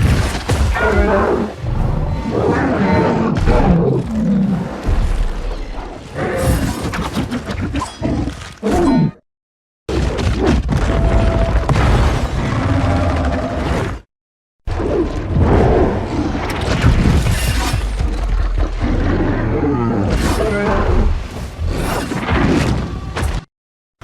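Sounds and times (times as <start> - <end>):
creature roaring: 0.7 - 4.8.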